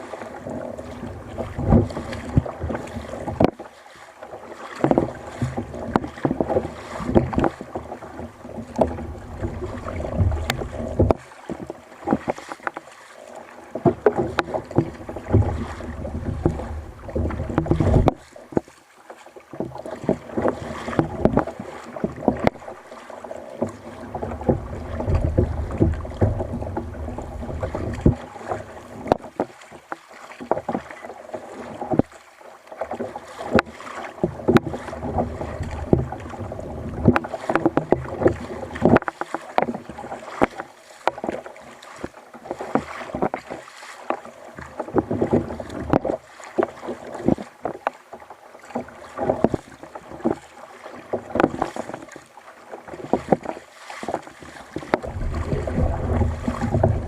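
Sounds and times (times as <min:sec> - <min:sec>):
water sloshing around a hull: 0:00.0 - 0:57.0
knocks and clicks: 0:10.2 - 0:12.8, 0:13.8 - 0:18.7, 0:23.6 - 0:28.2, 0:29.0 - 0:29.5.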